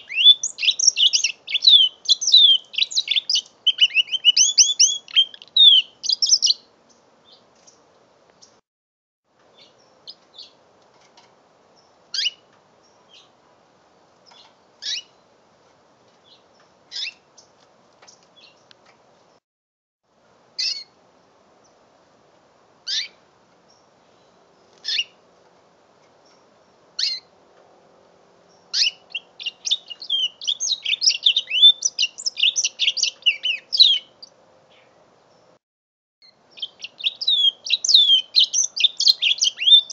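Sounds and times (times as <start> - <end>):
canary singing: 0.0 - 7.8, 11.8 - 13.4, 14.2 - 15.3, 16.2 - 18.7, 20.6 - 20.9, 22.8 - 25.2, 26.2 - 27.3, 28.5 - 34.9, 36.2 - 39.9.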